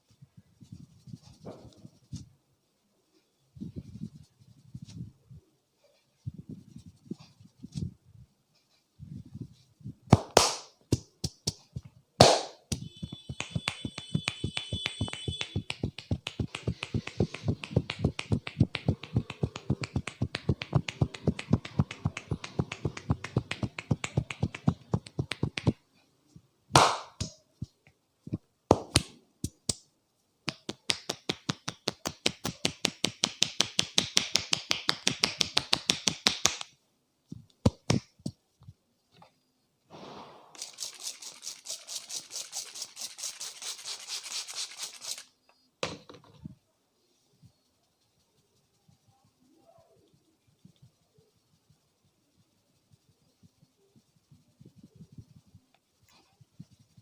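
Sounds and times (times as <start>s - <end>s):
hands slapping a head: 10.1s - 25.8s, 26.7s - 27.4s, 28.7s - 29.8s, 30.5s - 36.8s, 37.5s - 38.4s.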